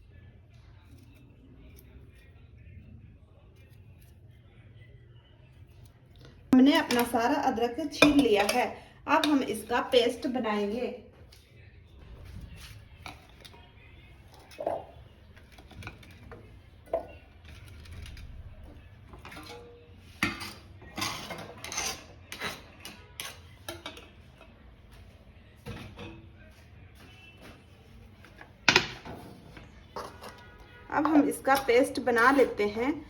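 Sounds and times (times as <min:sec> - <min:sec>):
metal dishes and spoons clinking: 0:06.6 - 0:10.0, 0:12.5 - 0:24.5, 0:25.6 - 0:26.5, 0:28.4 - 0:33.0.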